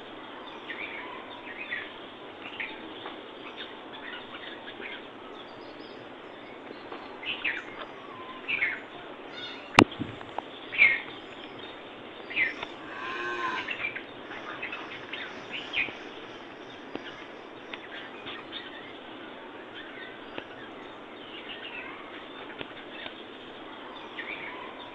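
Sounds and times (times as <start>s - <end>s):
birds chirping: 0.0s - 24.9s
cow mooing: 12.5s - 15.7s.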